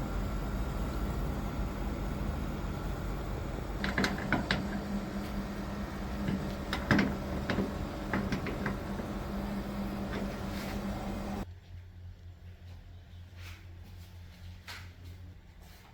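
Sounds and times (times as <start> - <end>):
steady low hum: 0.0 - 15.6
clicks and knocks of handling: 3.8 - 5.4, 6.2 - 9.2.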